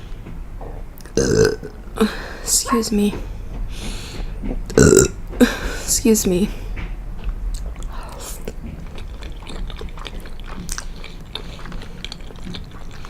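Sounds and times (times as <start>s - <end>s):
wet chewing mouth clicks: 6.8s - 13.0s.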